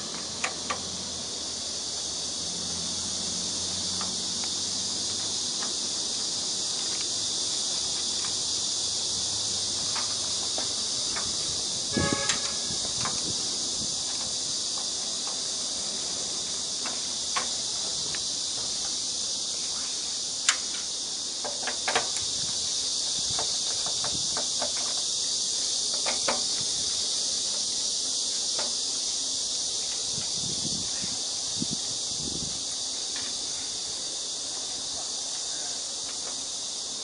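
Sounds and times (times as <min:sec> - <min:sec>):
high-pitched hiss: 0:00.0 - 0:37.0
light clicks and knocks: 0:20.4 - 0:22.3, 0:23.3 - 0:25.1.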